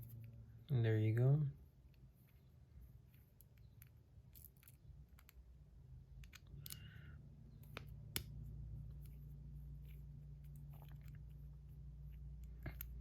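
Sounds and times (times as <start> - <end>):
low steady hum: 0.0 - 13.0
small metal clicks: 6.2 - 7.0.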